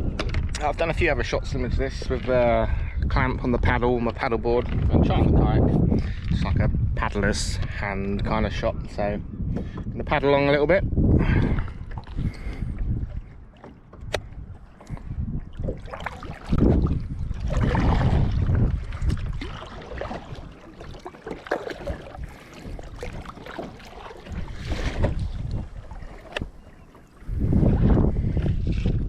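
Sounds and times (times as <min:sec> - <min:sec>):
wind buffeting microphone: 0:00.0 - 0:29.0
paddle strokes splashing water: 0:11.2 - 0:29.0.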